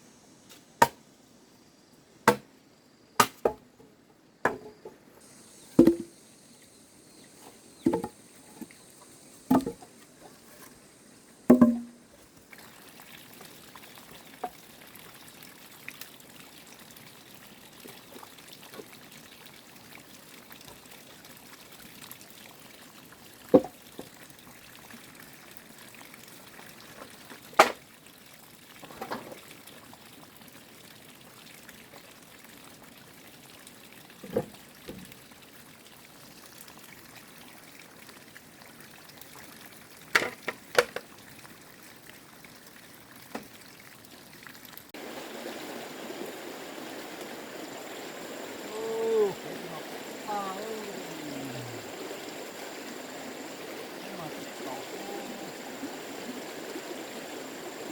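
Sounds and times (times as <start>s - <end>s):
sharp chopping knocks: 2.3s - 2.5s, 3.2s - 3.6s, 11.5s - 11.9s
water running: 44.9s - 57.9s.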